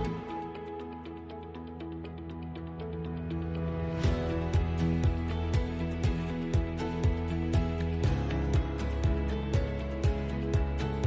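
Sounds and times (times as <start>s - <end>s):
kick drum beat: 4.1s - 11.0s.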